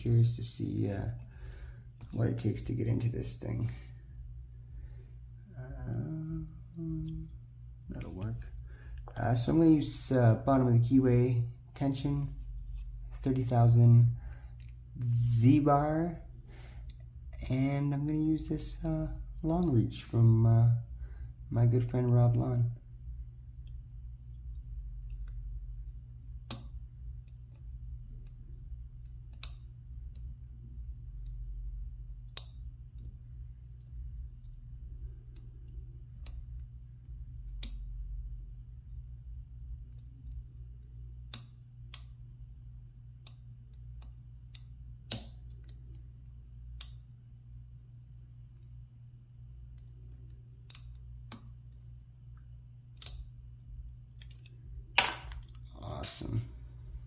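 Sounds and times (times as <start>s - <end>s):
low steady hum: 0.0s - 57.0s
lock pick metallic clicks: 44.0s - 45.8s, 54.2s - 55.6s.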